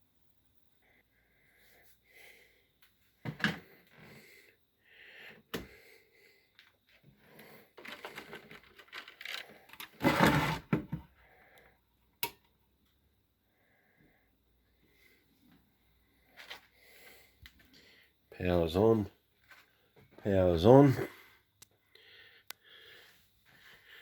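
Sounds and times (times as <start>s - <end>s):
clicks and rustling handling noise: 6.5s - 11.0s.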